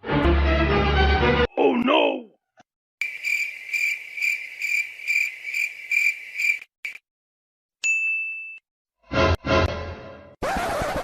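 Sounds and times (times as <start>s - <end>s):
cricket chirping: 3.0s - 7.0s.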